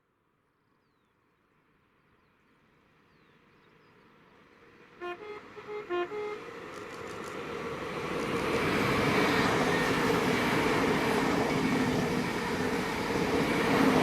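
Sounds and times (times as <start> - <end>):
rush of passing train: 4.0 - 14.0
train two-tone horn: 5.0 - 7.2.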